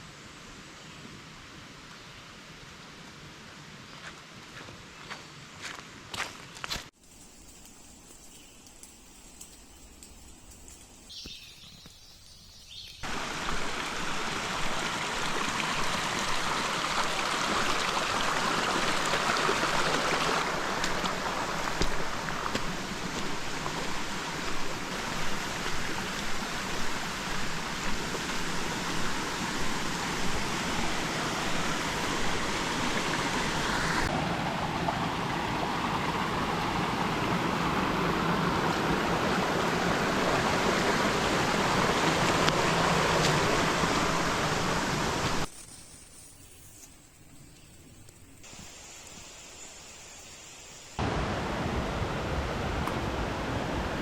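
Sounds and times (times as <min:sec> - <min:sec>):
rushing creek water: 0:13.0 - 0:45.5, 0:51.0 - 0:54.0.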